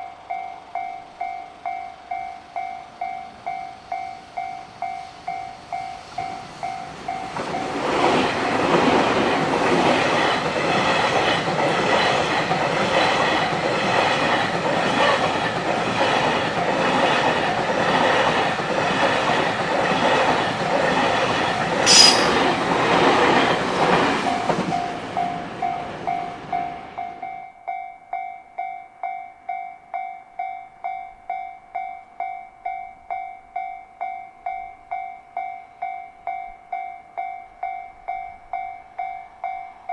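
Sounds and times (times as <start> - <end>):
train rushing past: 4.2 - 26.5
train wheels clattering over rails: 7.2 - 25.2
level-crossing bell ringing: 21.9 - 22.6
sharp wheel screech: 21.9 - 22.6.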